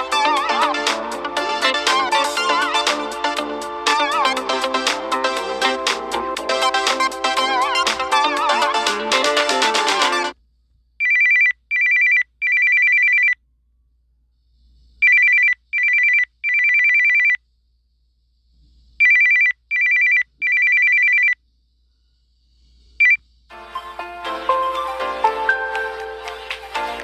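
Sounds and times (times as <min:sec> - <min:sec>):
two-tone electronic ringtone: 0:00.0 - 0:10.4.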